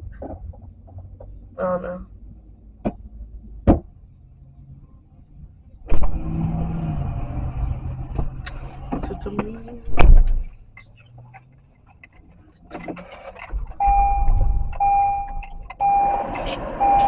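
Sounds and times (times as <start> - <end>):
engine noise: 4.2 - 17.0
car door opening: 12.7 - 17.0.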